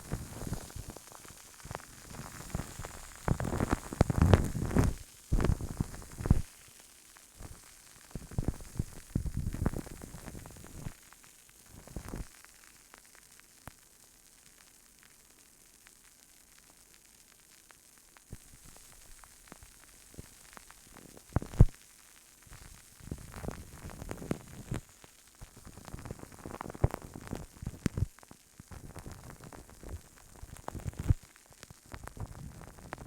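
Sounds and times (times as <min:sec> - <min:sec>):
low hiss: 0:00.0 - 0:13.0.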